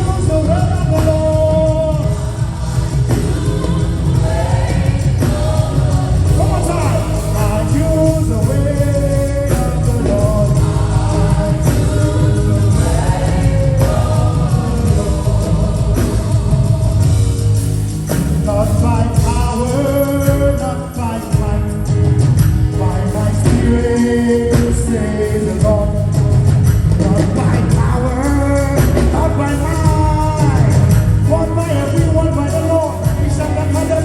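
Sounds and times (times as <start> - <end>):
band with drums and bass: 0.0 - 34.0
voices singing sustained notes: 1.6 - 22.0.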